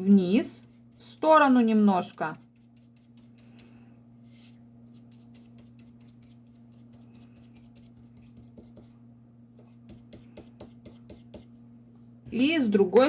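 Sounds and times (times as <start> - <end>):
low electrical hum: 0.0 - 13.0
brush scratching on paper: 2.0 - 9.0, 9.6 - 11.5.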